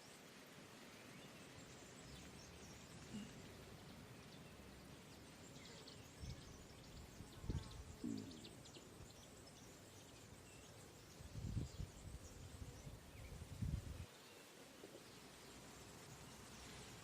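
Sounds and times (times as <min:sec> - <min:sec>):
small birds chirping: 0:00.0 - 0:17.0
low dull thumps: 0:07.9 - 0:08.7.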